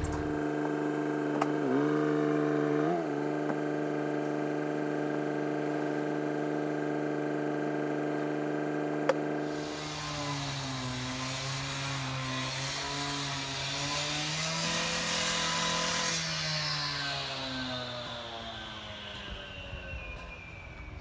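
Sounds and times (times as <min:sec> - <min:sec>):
diesel engine idling: 0:00.0 - 0:01.2
hiss: 0:09.4 - 0:13.8.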